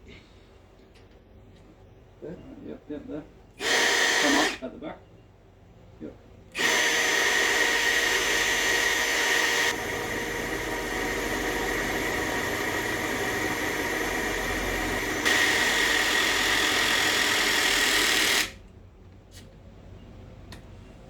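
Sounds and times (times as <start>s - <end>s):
power tool motor whining: 3.6s - 4.6s, 6.5s - 18.6s.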